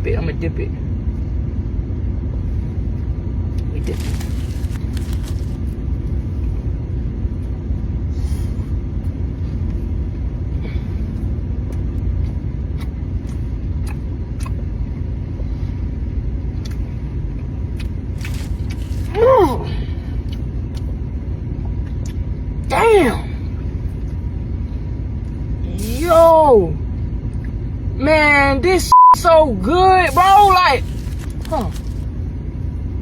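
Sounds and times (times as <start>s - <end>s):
steady low rumble: 0.0s - 33.0s
sandwich being bitten and eaten: 3.5s - 6.6s, 17.7s - 19.4s, 30.1s - 32.1s.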